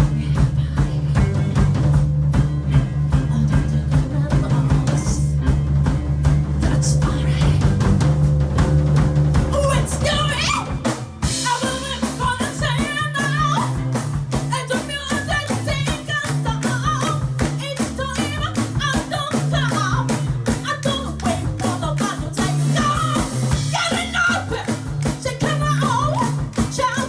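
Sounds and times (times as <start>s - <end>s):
bass and guitar: 0.0s - 27.0s
drum kit beat: 0.0s - 27.0s
person singing: 9.6s - 13.8s, 14.5s - 27.0s.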